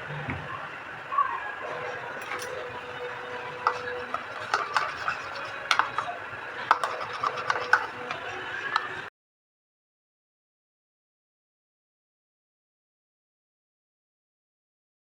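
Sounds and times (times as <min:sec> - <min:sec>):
faint steady hum: 0:00.0 - 0:09.1
kitchen utensils clicking: 0:01.6 - 0:09.1.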